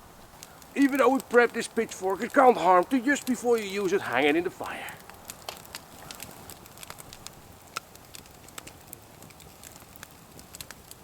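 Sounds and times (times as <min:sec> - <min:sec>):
faint hiss: 0:00.0 - 0:08.2
campfire crackling and popping: 0:00.0 - 0:11.0.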